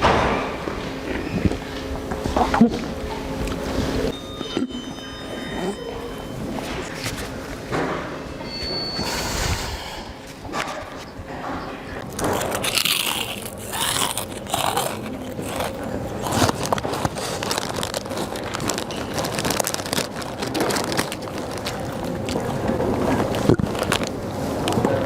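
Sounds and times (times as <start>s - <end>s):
food crunching being chewed: 12.0s - 25.0s.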